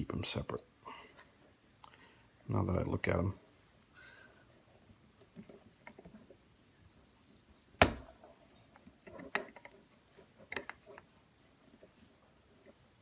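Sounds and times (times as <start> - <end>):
loud sharp knock: 7.8 - 8.1.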